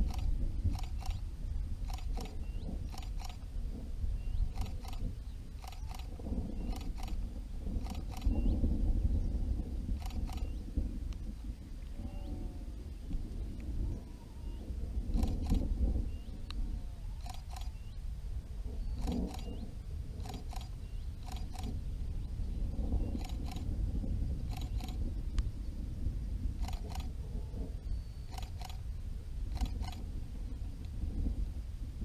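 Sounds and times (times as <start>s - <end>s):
low rumble: 0.0s - 32.0s.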